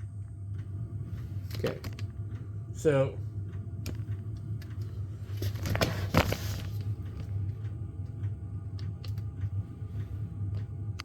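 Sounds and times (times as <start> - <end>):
low hum: 0.0 - 11.0
rustling scrape: 5.3 - 6.9.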